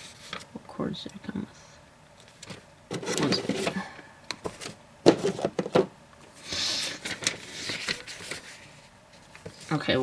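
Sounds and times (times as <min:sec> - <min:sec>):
items knocking and clicking: 0:02.4 - 0:05.9
packaging rustling: 0:06.8 - 0:09.8.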